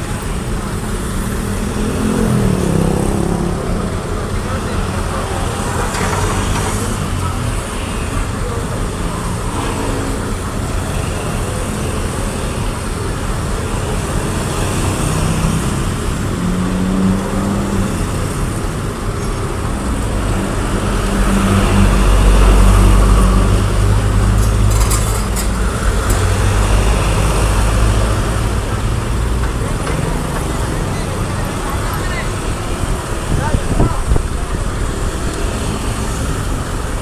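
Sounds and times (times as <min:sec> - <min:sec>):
diesel engine rumbling: 0:00.0 - 0:37.0.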